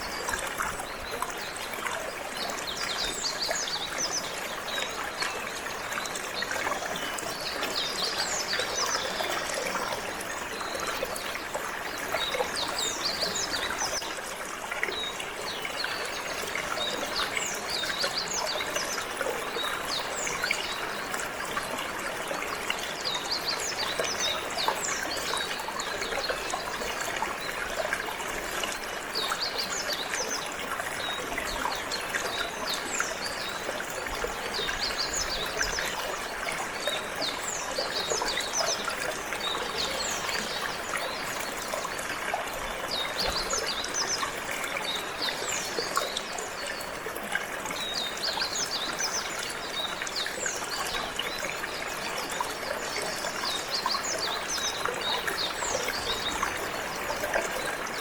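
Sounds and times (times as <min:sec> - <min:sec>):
water flowing and trickling: 0:00.0 - 0:58.0.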